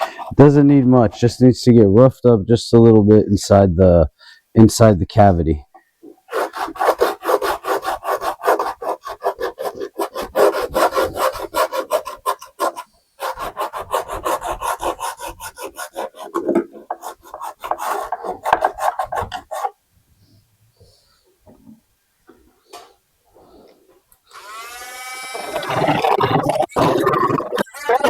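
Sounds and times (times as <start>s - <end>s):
sandpaper scratching fiberglass: 6.3s - 19.8s.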